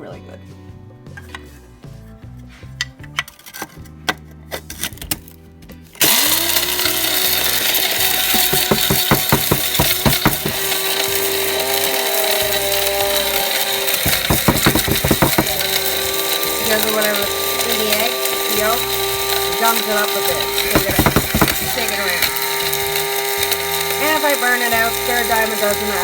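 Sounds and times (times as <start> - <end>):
coffee grinder whining: 6.0 - 26.0
shells rattling in grinder: 6.0 - 26.0.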